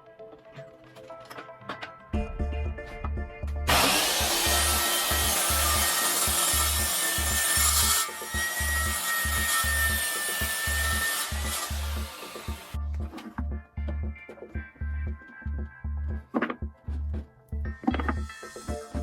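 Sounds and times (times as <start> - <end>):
music bass beat: 2.2 - 19.0
power saw cutting metal: 3.7 - 12.8, 17.9 - 19.0.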